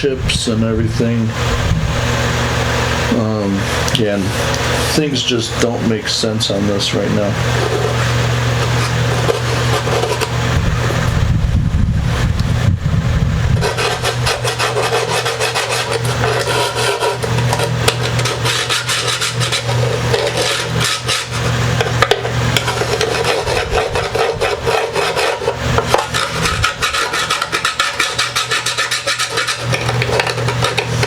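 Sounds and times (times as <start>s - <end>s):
steady low hum: 0.0s - 31.0s
file rasping on wood: 3.6s - 5.1s, 7.4s - 10.4s, 13.6s - 31.0s.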